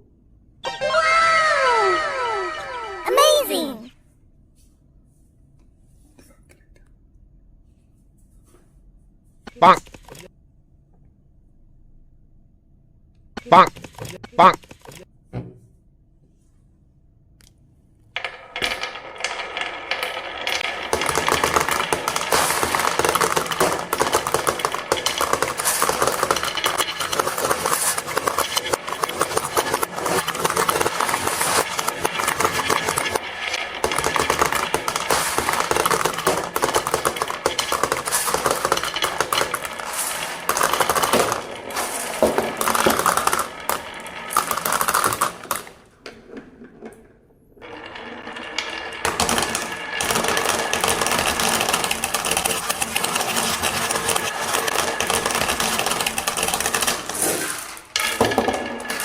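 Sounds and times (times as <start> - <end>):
marbles clattering down wooden tracks: 18.2 - 59.0.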